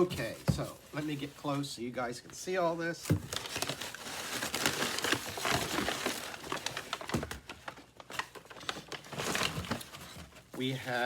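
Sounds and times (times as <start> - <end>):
packing material rustling: 3.0 - 11.0.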